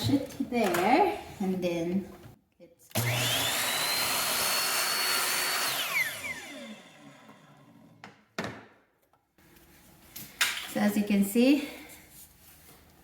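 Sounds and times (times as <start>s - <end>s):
electric saw cutting wood: 2.9s - 8.0s.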